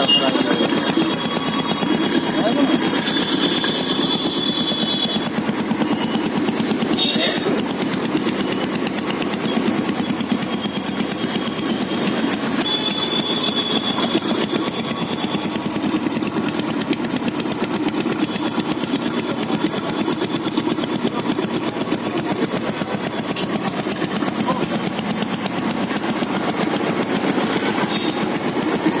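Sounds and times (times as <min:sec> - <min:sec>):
motorcycle engine idling: 0:00.0 - 0:29.0.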